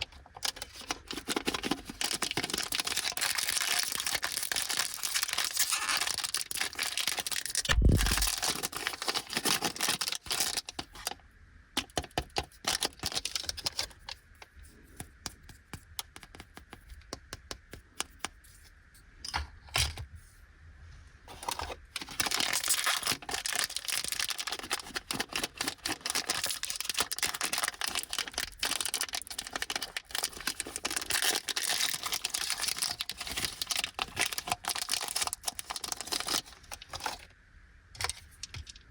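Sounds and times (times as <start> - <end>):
plastic wrappers crinkling: 0.0 - 11.2, 11.8 - 14.2, 21.3 - 37.3
clicks and taps: 14.4 - 18.4.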